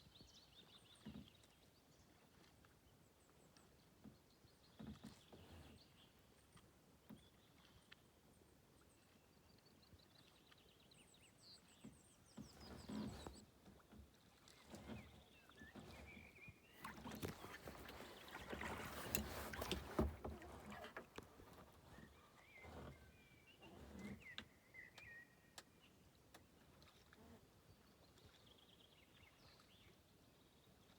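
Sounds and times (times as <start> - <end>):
paddle dips and water splashes: 0.6 - 30.9
small birds chirping: 14.9 - 20.0.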